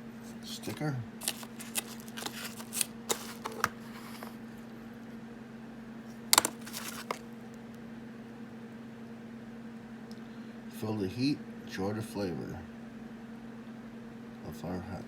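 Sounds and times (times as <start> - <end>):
steady low hum: 0.0 - 15.0
items rustling and tapping: 0.5 - 4.5, 6.1 - 7.3.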